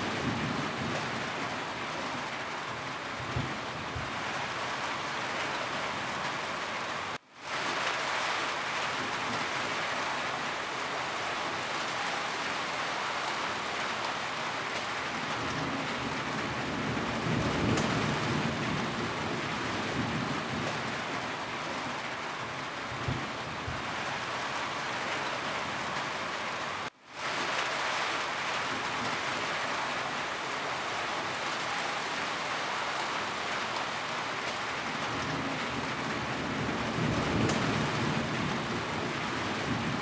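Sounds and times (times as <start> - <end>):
heavy rain on a roof: 0.0 - 40.0
thunder rumble: 34.9 - 40.0.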